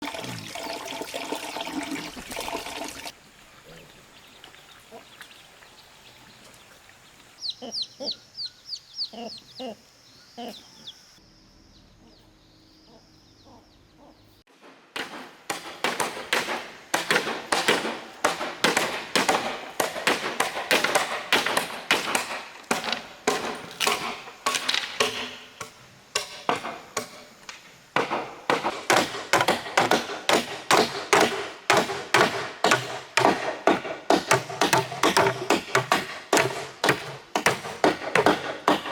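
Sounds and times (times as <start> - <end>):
faint bird chirps: 3.5 - 14.4
rapid chopping blows: 14.5 - 25.4, 28.0 - 38.9.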